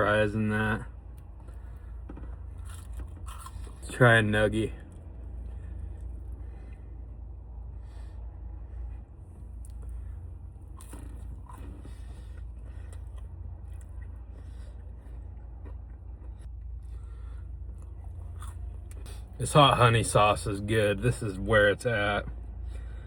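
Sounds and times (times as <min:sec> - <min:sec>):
steady low rumble: 0:00.0 - 0:23.0
person chewing crunchy food: 0:01.2 - 0:03.9, 0:09.4 - 0:19.4.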